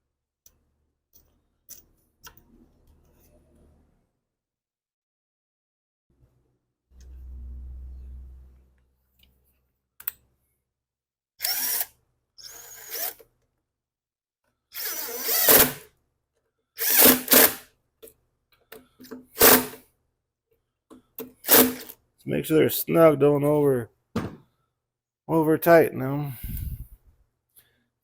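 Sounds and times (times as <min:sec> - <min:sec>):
cordless drill spinning: 0:11.4 - 0:13.2, 0:14.7 - 0:15.8, 0:16.8 - 0:17.6, 0:19.4 - 0:19.8, 0:21.4 - 0:21.9.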